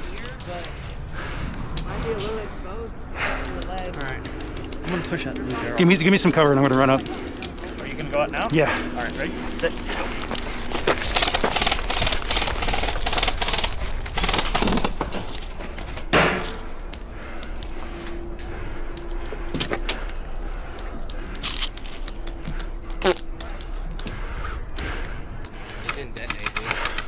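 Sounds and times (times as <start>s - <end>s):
gear rattling: 0.0s - 27.0s
footsteps running: 4.1s - 16.1s.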